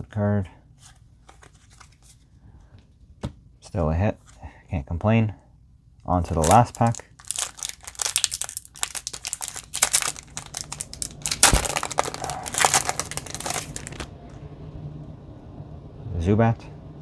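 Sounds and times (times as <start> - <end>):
foil wrapper crinkling and tearing: 6.3 - 14.1.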